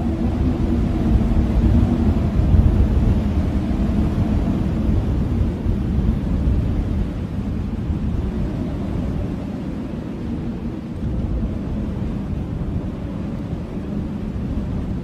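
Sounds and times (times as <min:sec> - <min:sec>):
blizzard wind rumbling: 0:00.0 - 0:15.0
faint wind howling: 0:00.0 - 0:15.0.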